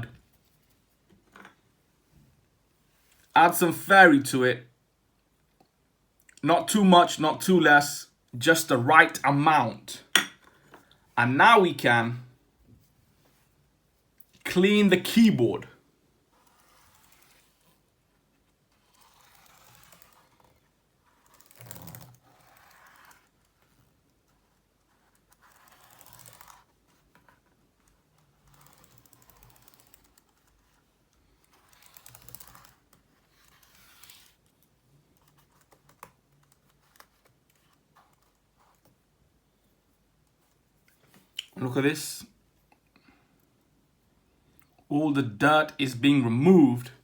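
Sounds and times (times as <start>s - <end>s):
cotton bud scrubbing keyboard: 18.8s - 34.4s.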